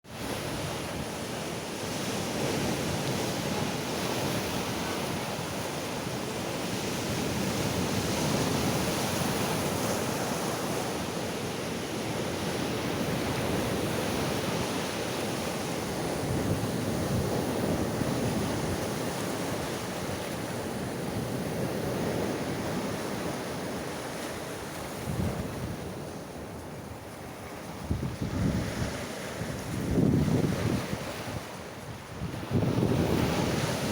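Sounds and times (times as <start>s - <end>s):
surf washing onto shore: 0.1s - 33.9s
wind buffeting microphone: 11.4s - 33.9s.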